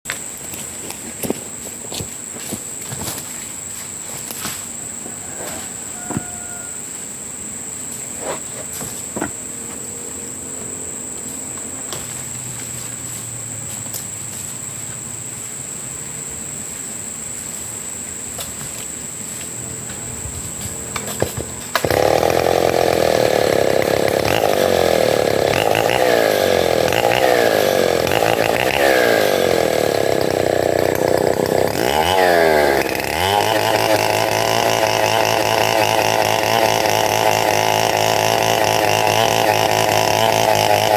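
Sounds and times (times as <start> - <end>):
wood-cutting machine engine: 19.4 - 40.9.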